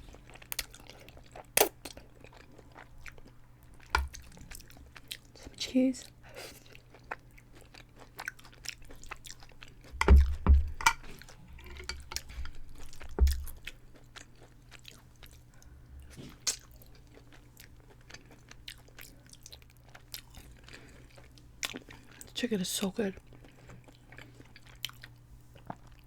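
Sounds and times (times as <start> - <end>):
person chewing food: 0.0 - 22.4, 23.2 - 26.0
dull thumps: 10.0 - 10.9, 13.1 - 13.6.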